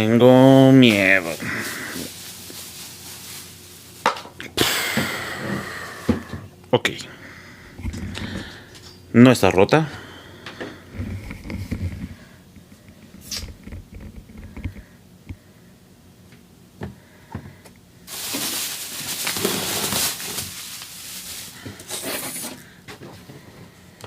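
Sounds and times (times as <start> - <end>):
packaging rustling: 0.7 - 4.1, 18.1 - 22.6.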